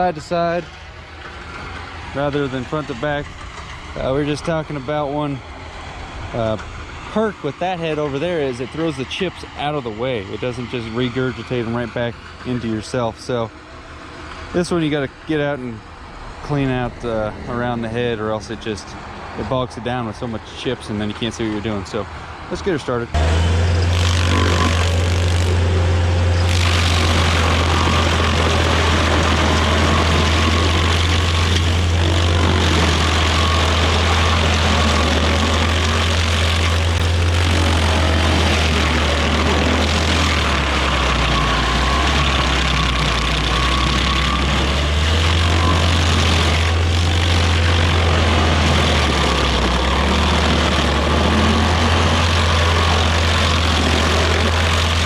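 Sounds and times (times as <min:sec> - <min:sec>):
stump grinder running: 0:23.1 - 0:55.0.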